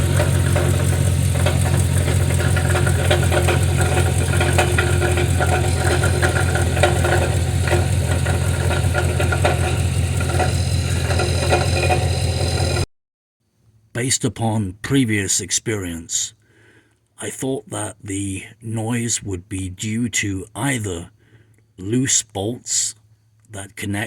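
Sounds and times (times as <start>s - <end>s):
engine idling: 0.0s - 12.9s
rattle under vehicle: 0.0s - 12.9s.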